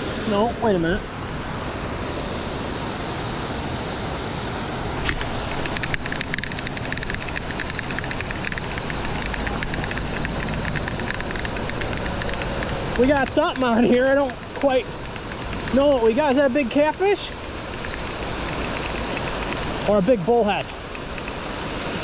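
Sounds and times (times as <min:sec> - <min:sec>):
fishing reel clicking and whirring: 0:05.0 - 0:22.0.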